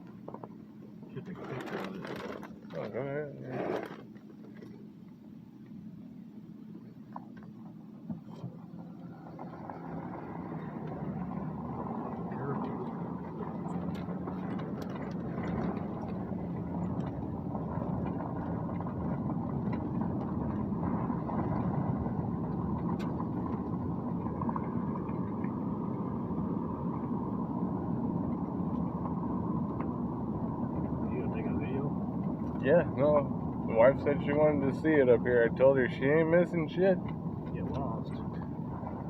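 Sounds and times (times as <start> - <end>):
road and engine noise in vehicle: 0.0 - 39.0
light ticks and rattles: 10.6 - 27.2.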